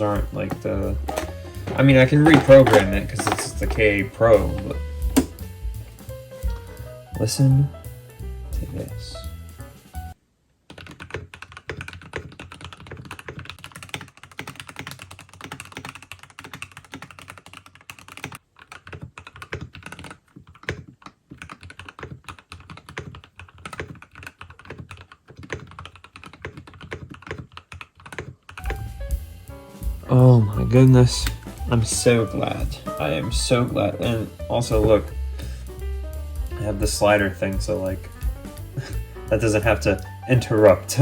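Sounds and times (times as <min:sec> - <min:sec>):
mechanical keyboard typing: 0:00.4 - 0:05.4, 0:10.7 - 0:28.8.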